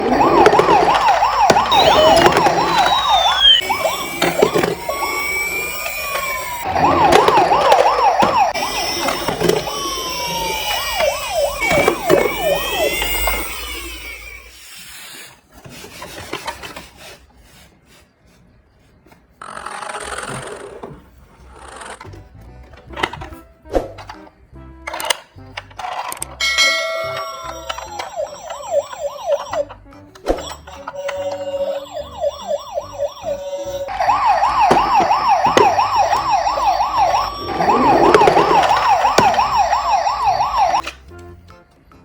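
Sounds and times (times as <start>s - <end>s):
emergency vehicle sirens wailing: 0.0s - 14.5s, 26.8s - 40.9s.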